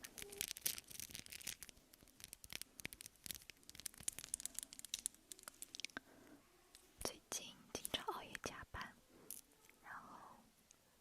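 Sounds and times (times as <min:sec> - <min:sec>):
soft quick clicks and crackles: 0:00.0 - 0:06.1.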